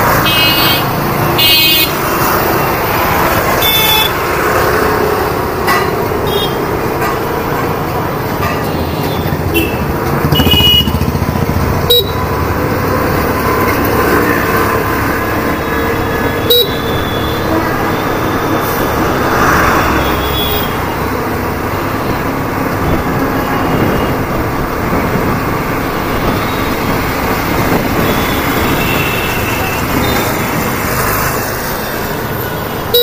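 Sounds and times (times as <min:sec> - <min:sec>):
road and wind noise: 0:00.0 - 0:33.0
scooter engine running: 0:09.4 - 0:14.5.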